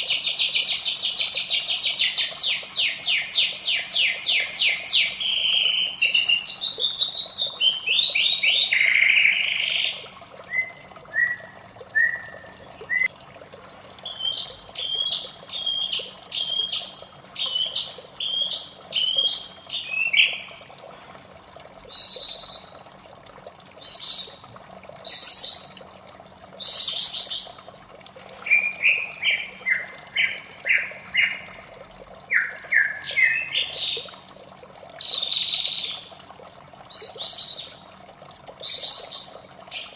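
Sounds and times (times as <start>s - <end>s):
running water: 0.0s - 39.9s
bird singing whistled phrases: 4.0s - 13.1s, 14.1s - 16.9s, 21.9s - 22.8s, 28.5s - 31.4s, 32.3s - 34.0s.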